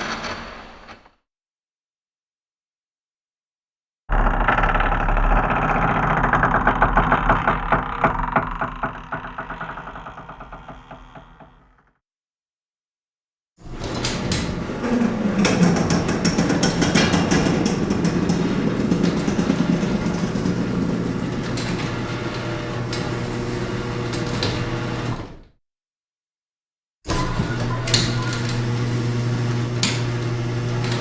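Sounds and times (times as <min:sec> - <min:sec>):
garage door rattling: 0:13.7 - 0:25.1.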